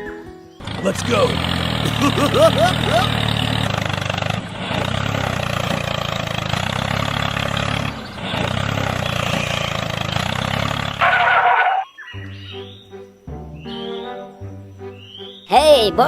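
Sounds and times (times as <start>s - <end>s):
vehicle engine running: 0.6s - 11.8s.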